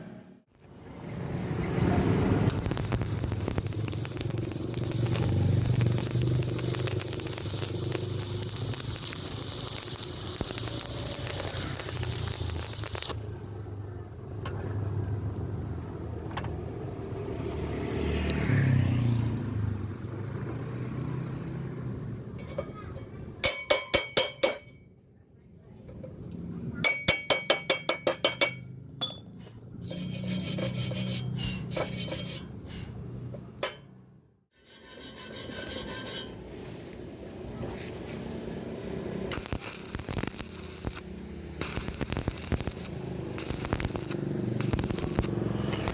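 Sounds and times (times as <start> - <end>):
welding arc crackling and hissing: 2.2 - 13.2, 38.2 - 45.9
scraping on metal: 29.4 - 32.8, 34.6 - 36.8.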